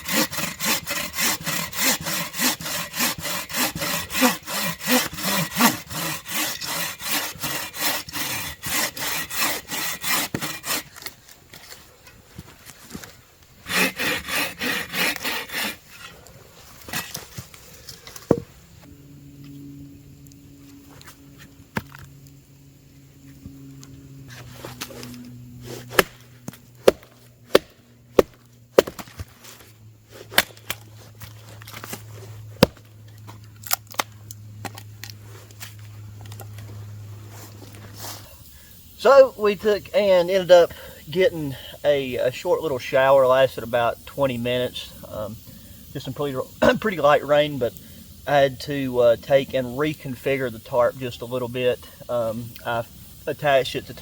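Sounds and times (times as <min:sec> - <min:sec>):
hand saw cutting wood: 0:00.0 - 0:11.8, 0:13.0 - 0:16.2
steady low hum: 0:00.0 - 0:39.1.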